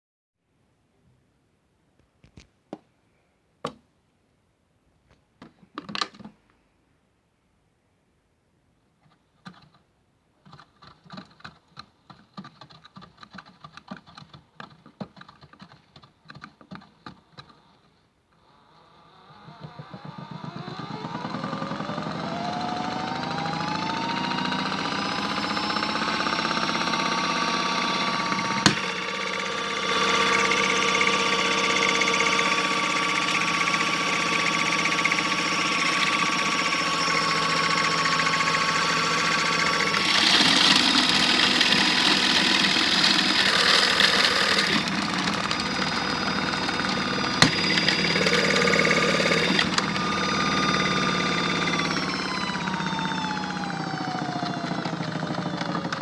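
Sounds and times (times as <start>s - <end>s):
small electric motor whine: 18.4s - 56.0s
sharp clicks: 26.5s - 31.1s.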